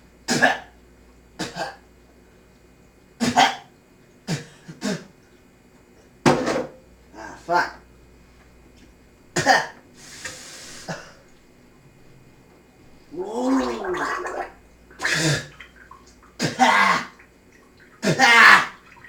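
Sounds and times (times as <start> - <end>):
man coughing and gagging: 1.4 - 1.8, 9.4 - 9.8, 16.4 - 17.2, 18.0 - 18.7
man retching: 13.1 - 15.6, 16.4 - 17.2, 18.0 - 18.8.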